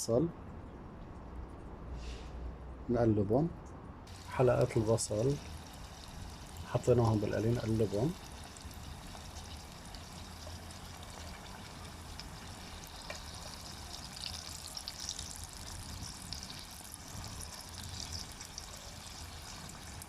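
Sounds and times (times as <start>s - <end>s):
onion rings deep-frying in oil: 4.1s - 20.0s.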